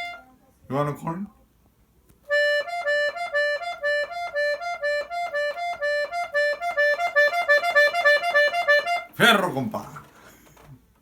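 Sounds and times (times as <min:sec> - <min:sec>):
accordion staccato notes: 0:02.3 - 0:09.8.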